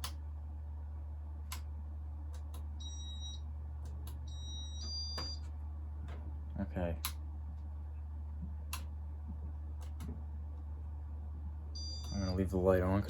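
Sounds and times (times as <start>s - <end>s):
scattered clicks: 0.0s - 0.2s, 1.5s - 1.7s, 2.3s - 2.7s, 3.8s - 4.2s, 7.0s - 7.2s, 8.7s - 9.0s
steady low hum: 0.0s - 13.0s
short high beeps: 11.8s - 12.4s.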